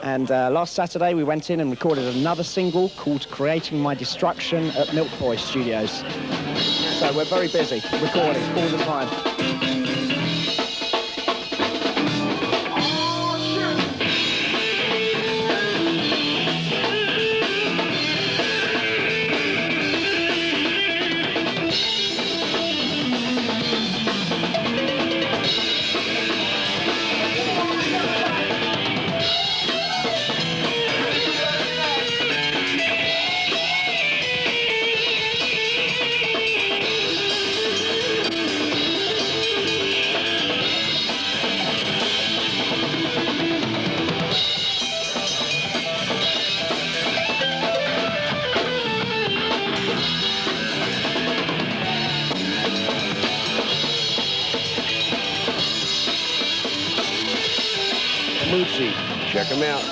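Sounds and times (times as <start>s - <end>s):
rock band playing: 1.8s - 59.9s.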